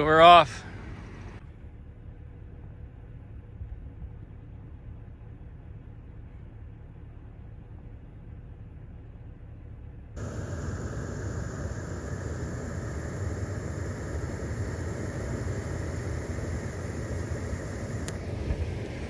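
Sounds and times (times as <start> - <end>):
vehicle rumble and road noise: 0.1 - 1.4, 10.2 - 19.0.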